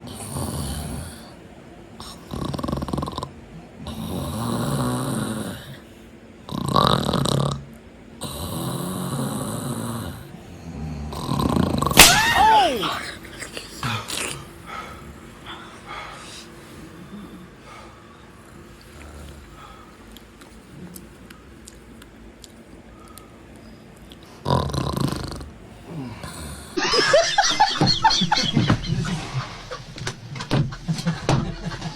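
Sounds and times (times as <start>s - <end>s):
man snoring: 0.0s - 1.4s, 2.0s - 5.8s, 6.5s - 7.6s, 8.2s - 12.0s, 24.4s - 30.0s
jumpy vocal sounds: 27.6s - 31.9s.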